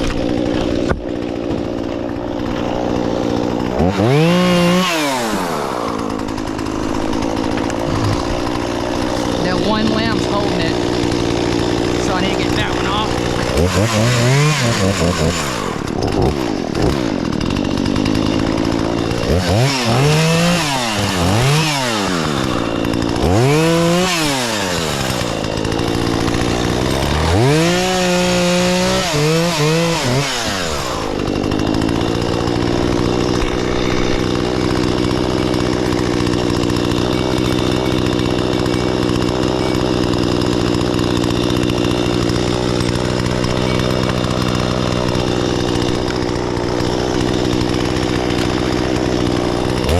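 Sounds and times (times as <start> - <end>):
chainsaw engine revving: 0.0 - 49.9.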